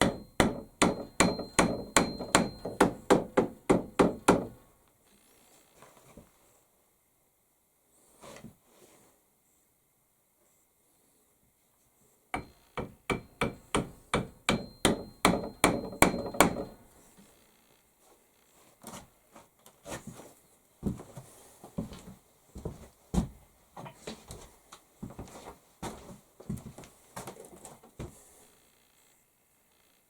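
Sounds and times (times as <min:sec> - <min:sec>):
hammer strikes with metallic ring: 0:00.0 - 0:04.6, 0:12.4 - 0:16.8.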